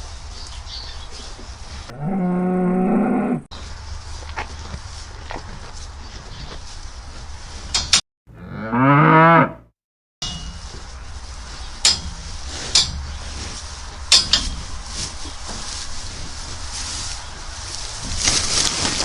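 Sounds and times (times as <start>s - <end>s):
cow mooing: 1.9s - 3.4s, 8.3s - 9.7s.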